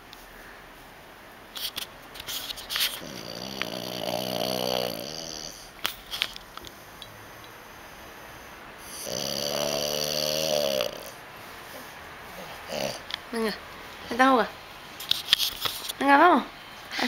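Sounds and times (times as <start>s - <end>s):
dog snoring: 2.9s - 5.7s, 8.8s - 13.1s.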